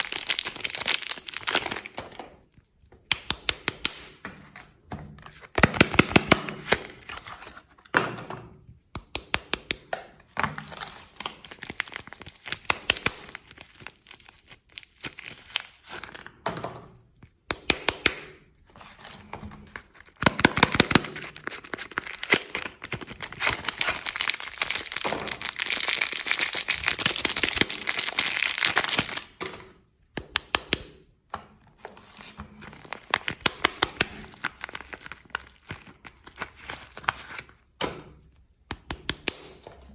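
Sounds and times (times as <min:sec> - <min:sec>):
wrappers crinkling and tearing: 0:00.0 - 0:02.0, 0:10.7 - 0:16.2, 0:20.0 - 0:29.4, 0:32.6 - 0:37.6.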